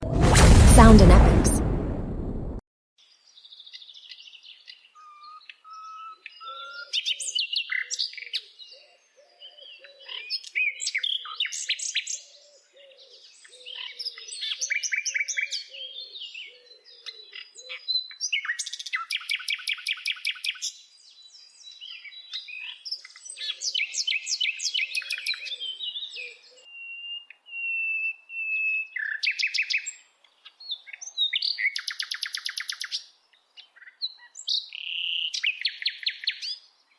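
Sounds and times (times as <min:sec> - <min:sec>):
bird singing trills and whistles: 0:17.9 - 0:30.0, 0:30.7 - 0:33.0, 0:34.0 - 0:36.6.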